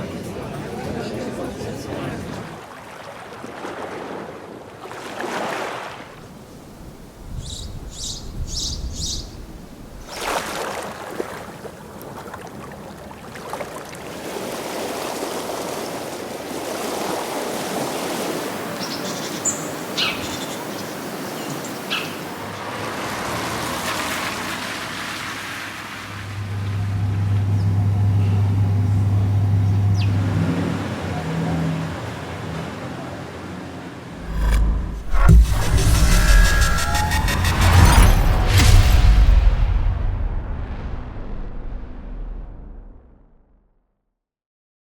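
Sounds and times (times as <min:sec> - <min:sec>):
bird chirps: 0:07.4 - 0:09.5, 0:29.6 - 0:30.2
engine low hum: 0:26.0 - 0:39.1
distant noise: 0:34.0 - 0:43.0.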